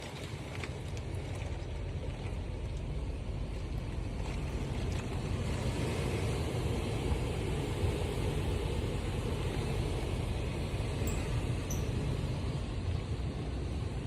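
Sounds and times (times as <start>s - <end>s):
strong wind buffeting microphone: 3.0s - 14.0s.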